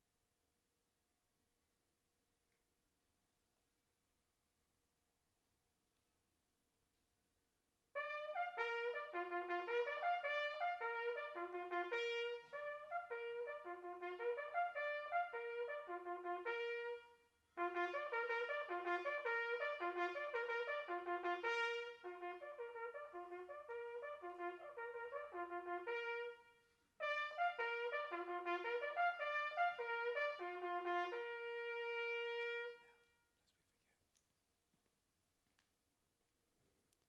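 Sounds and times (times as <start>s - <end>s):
solo trumpet bugle call: 8.0s - 33.2s.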